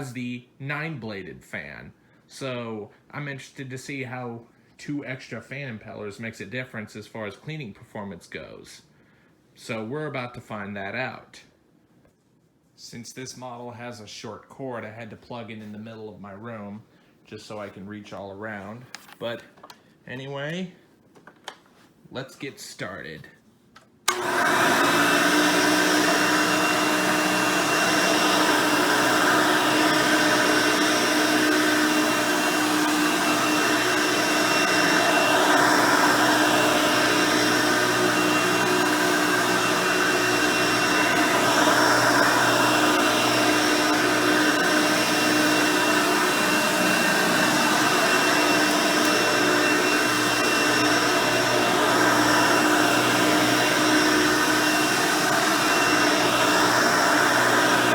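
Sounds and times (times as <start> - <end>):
upright vacuum cleaner whining: 24.1 - 57.9.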